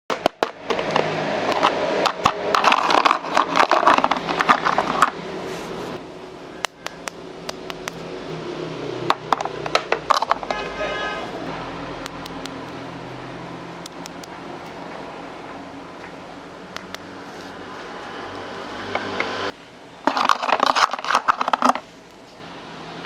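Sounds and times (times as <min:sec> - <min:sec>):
toy clicks and taps: 0:13.8 - 0:14.4.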